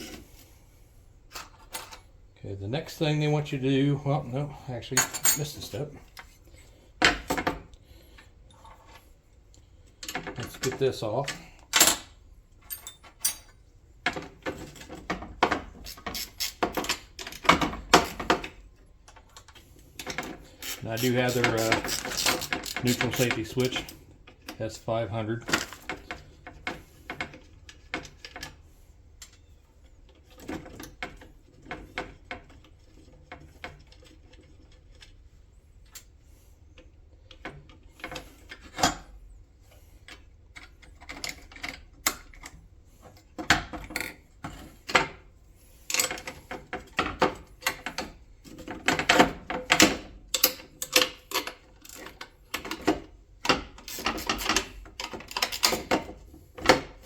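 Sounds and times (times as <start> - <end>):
metal parts clicking and clanking: 1.3 - 2.1, 4.9 - 6.3, 10.0 - 13.6, 14.5 - 24.0, 45.9 - 57.0.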